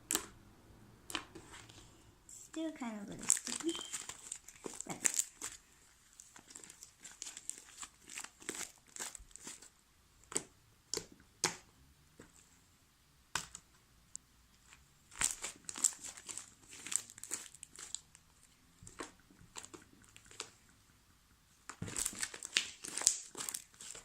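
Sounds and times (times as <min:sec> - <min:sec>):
slime crackles and pops: 0:00.1 - 0:00.4, 0:03.1 - 0:05.6, 0:15.1 - 0:20.6, 0:21.6 - 0:24.0.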